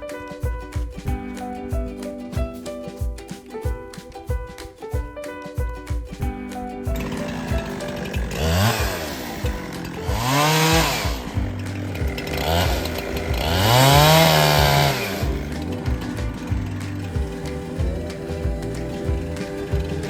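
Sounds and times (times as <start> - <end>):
background music: 0.0 - 20.0
chainsaw revving: 7.0 - 20.0.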